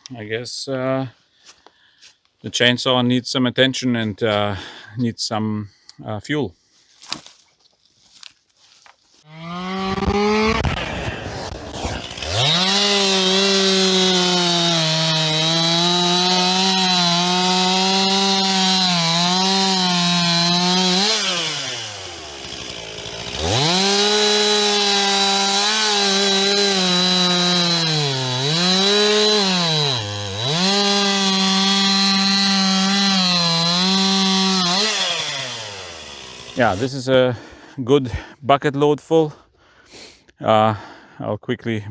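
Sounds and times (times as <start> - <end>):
chainsaw cutting logs: 9.2 - 37.0.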